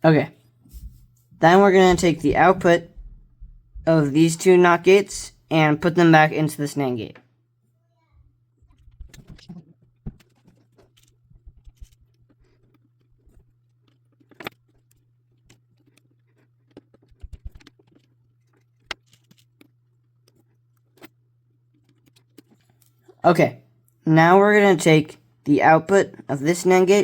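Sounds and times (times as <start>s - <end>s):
steady low hum: 0.0s - 7.1s
clicks and rustles of wires: 8.6s - 23.2s.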